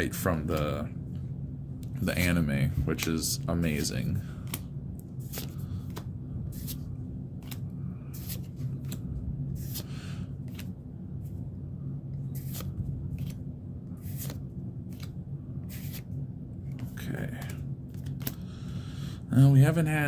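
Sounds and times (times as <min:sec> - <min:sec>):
steady low hum: 0:00.0 - 0:20.0
cards ticking and rustling: 0:16.7 - 0:18.5.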